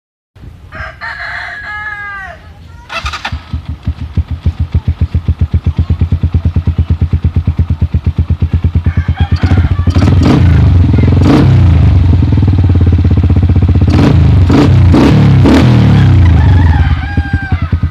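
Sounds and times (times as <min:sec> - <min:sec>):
rooster crowing: 0:00.7 - 0:03.2, 0:08.8 - 0:10.4, 0:15.8 - 0:17.9
exhaust cracks: 0:02.9 - 0:08.6
motorcycle idling and revving: 0:02.9 - 0:17.9.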